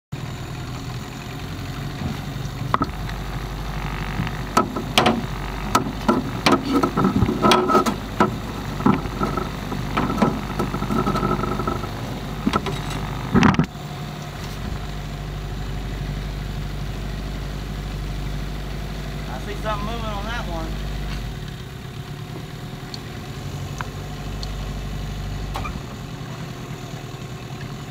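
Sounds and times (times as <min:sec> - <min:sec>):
boat motor idling: 0:00.1 - 0:27.9
sharp knocks and clatters: 0:03.8 - 0:13.7.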